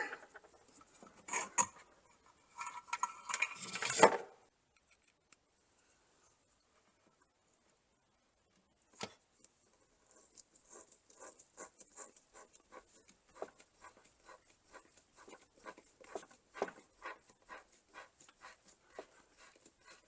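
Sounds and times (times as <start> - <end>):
light taps and scratches on drywall: 8.9 - 20.0.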